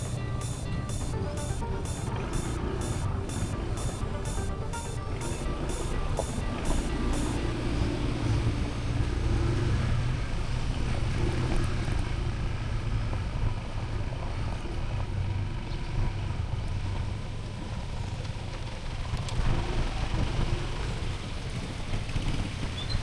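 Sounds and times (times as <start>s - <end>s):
vehicle engine rumbling: 0.0s - 13.8s.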